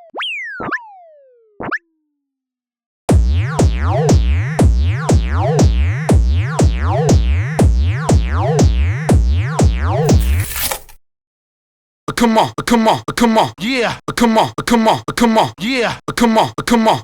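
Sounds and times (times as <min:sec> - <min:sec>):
electronic thump and zap loop: 0:03.1 - 0:10.4.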